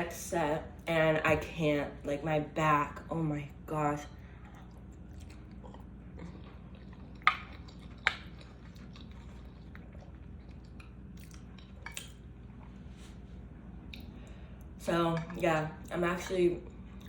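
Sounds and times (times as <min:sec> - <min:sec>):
chewing food: 0:04.2 - 0:17.0.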